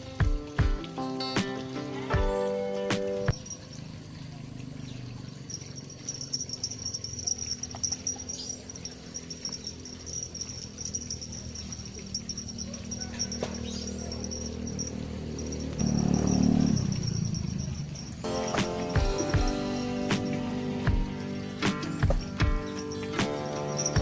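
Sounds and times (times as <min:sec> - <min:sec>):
insect trilling: 0:02.3 - 0:24.0.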